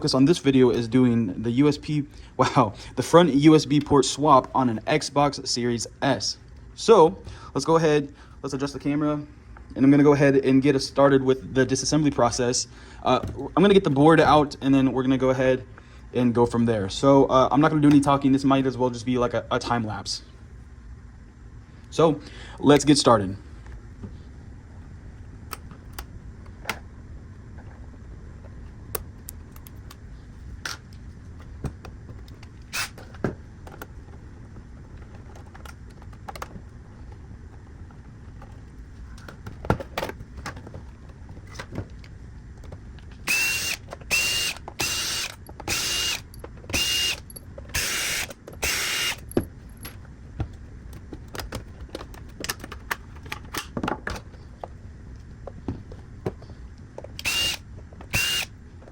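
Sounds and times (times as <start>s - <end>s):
electric screwdriver whine: 32.7s - 33.0s, 43.2s - 49.2s, 57.2s - 58.5s.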